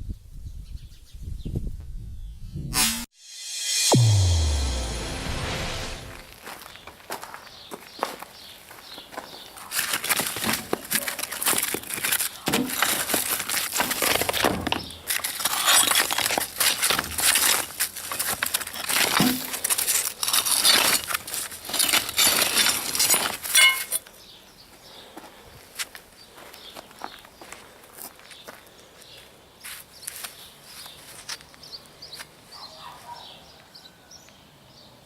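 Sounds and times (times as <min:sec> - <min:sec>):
machete blade scraping: 0:02.7 - 0:04.0, 0:19.0 - 0:24.0
metallic ring: 0:23.6 - 0:24.0.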